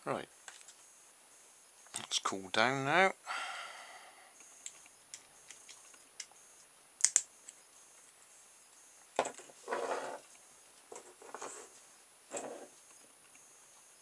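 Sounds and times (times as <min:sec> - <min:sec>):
light clicks of small parts: 0:04.4 - 0:08.1.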